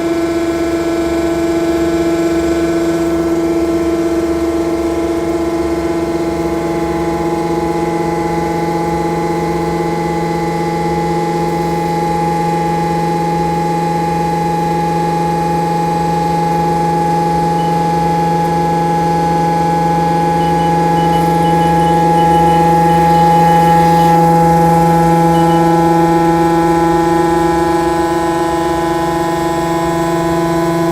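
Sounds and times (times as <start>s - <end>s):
milling machine spindle whine: 15.5s - 30.3s.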